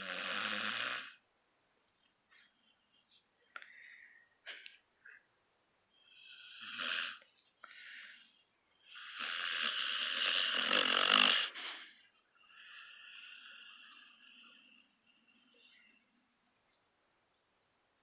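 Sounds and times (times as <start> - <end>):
puppy snoring: 0.0 - 1.2, 6.3 - 7.2, 8.9 - 11.8.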